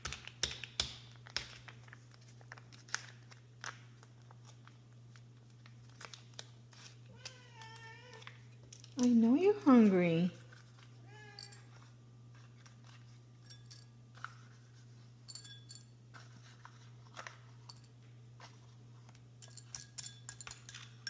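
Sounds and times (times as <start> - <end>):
steady low hum: 2.0 - 21.0
dishes and utensil clinking: 11.1 - 11.9, 12.8 - 18.0, 19.4 - 21.0.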